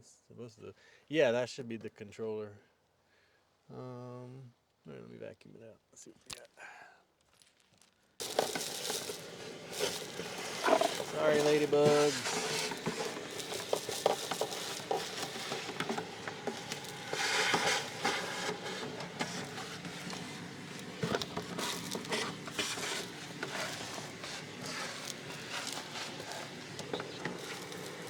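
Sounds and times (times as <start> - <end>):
debris rattling up nozzle: 8.2 - 28.0
vacuum cleaner motor hum: 8.2 - 28.0.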